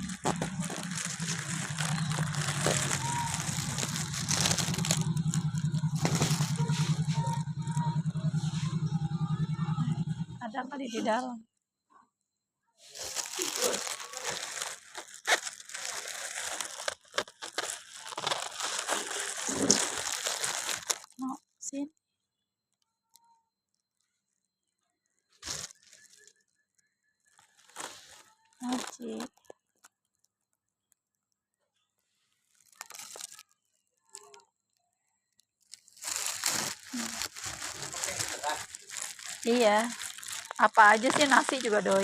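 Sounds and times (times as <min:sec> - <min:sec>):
crinkling rustling noise: 0:00.0 - 0:09.0, 0:12.8 - 0:21.4, 0:25.2 - 0:26.5, 0:27.3 - 0:31.4, 0:32.2 - 0:34.4, 0:35.4 - 0:42.0.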